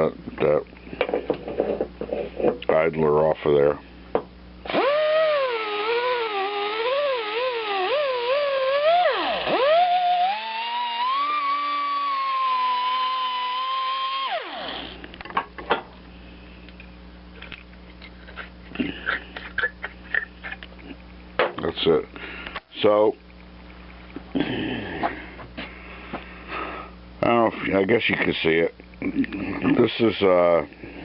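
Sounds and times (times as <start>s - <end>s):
die grinder whining on metal: 4.7s - 15.0s.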